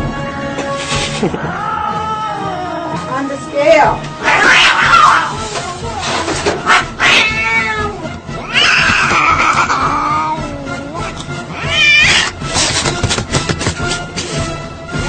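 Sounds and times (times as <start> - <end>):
cat yowling: 4.2 - 5.4, 6.6 - 12.4.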